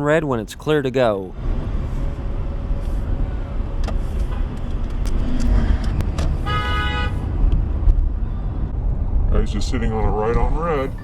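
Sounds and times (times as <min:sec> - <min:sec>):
idling traffic rumble: 0:00.0 - 0:11.0
car horn honk: 0:06.4 - 0:07.3.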